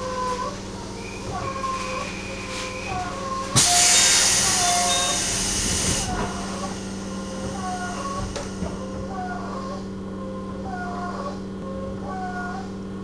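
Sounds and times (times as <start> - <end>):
steady electric hum: 0.0 - 13.0
short whining tones: 0.9 - 9.5
compressed air hiss: 3.5 - 8.9.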